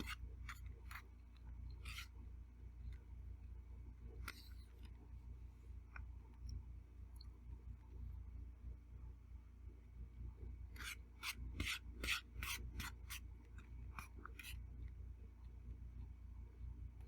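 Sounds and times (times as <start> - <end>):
utensil scraping a plate: 0.0 - 1.0.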